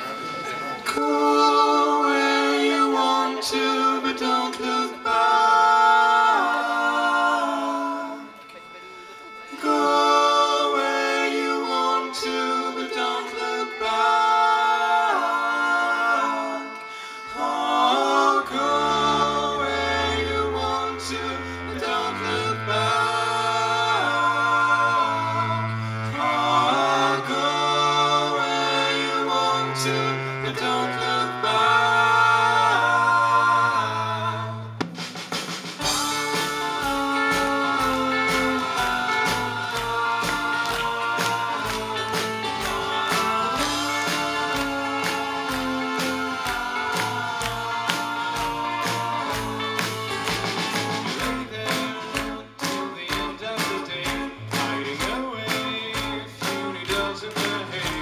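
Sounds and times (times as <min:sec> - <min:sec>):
voices singing in harmony: 0:00.0 - 0:58.0
bass line: 0:17.7 - 0:35.0, 0:35.8 - 0:58.0
percussion beat: 0:34.8 - 0:58.0
strummed guitar: 0:35.7 - 0:58.0.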